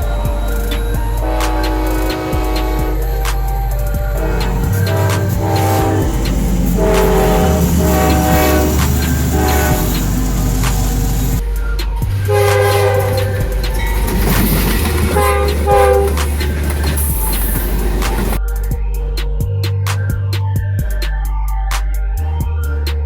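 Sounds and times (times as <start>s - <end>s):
locomotive air horn blasts: 0.0s - 18.4s
passing train rumble: 0.0s - 19.6s.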